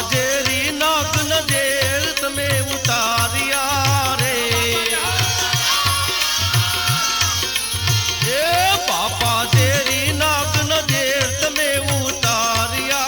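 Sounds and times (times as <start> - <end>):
hand drum beat: 2.4 - 12.4.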